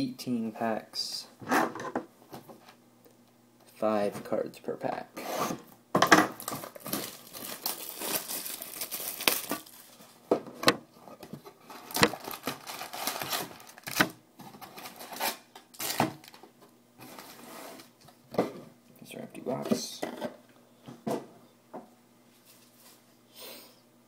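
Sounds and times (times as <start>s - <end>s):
foil packs crinkling: 6.4s - 10.2s, 11.6s - 16.4s.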